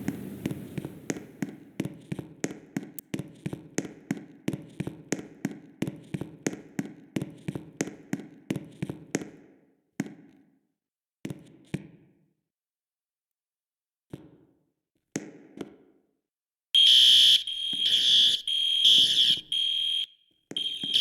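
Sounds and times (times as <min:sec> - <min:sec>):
fire alarm bell ringing: 0:16.8 - 0:21.0.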